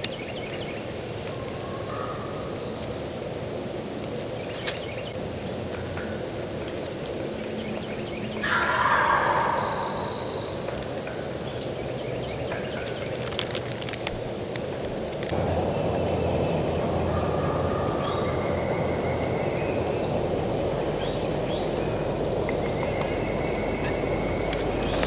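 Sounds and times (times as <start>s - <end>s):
turkey gobbling: 8.4s - 10.8s
faint songbird chirps: 15.4s - 25.0s.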